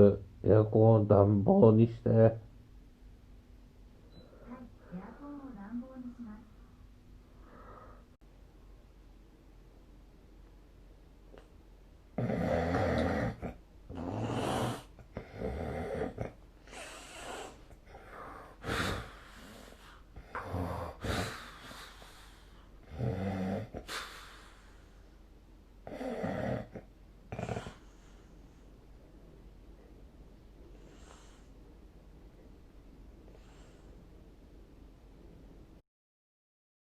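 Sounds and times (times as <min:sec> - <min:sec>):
person snoring: 0:12.2 - 0:22.1, 0:22.8 - 0:24.5, 0:25.8 - 0:28.0.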